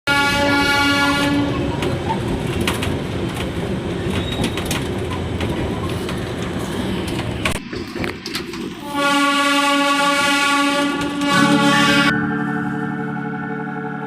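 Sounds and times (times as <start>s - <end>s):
train horn: 0.1s - 1.7s, 8.8s - 12.8s
train rumbling: 0.1s - 14.0s
train wheels clicking on rail joints: 1.5s - 8.9s, 10.2s - 11.5s.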